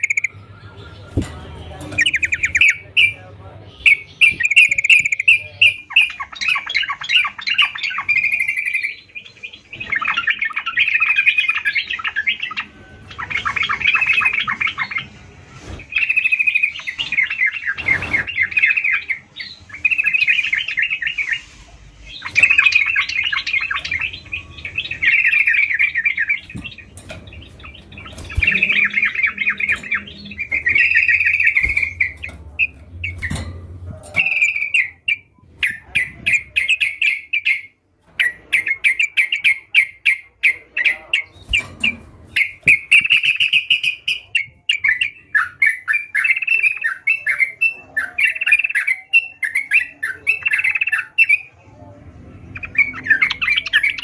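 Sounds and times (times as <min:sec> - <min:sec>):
bulbul singing rapid chattering notes: 0:00.0 - 0:01.1, 0:03.8 - 0:15.1, 0:22.0 - 0:33.4.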